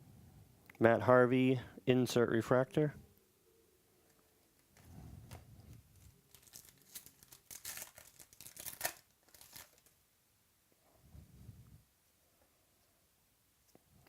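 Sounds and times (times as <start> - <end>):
card pack wrapper crinkling: 4.6 - 10.0
sharp wrapper crackles: 4.6 - 10.0.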